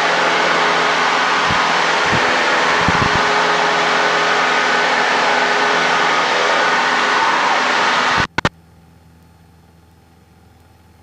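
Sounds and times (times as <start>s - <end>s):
propeller plane engine droning: 0.0s - 11.0s
dull low thumps: 1.5s - 3.4s.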